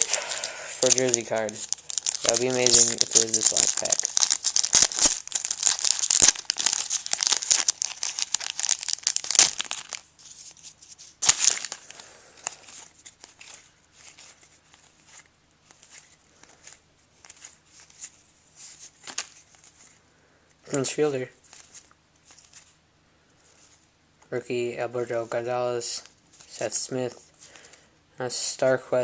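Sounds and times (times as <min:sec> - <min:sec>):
cards rustling and ticking: 0:00.0 - 0:20.0, 0:20.7 - 0:22.8
wrapper crinkling and tearing: 0:00.0 - 0:20.0.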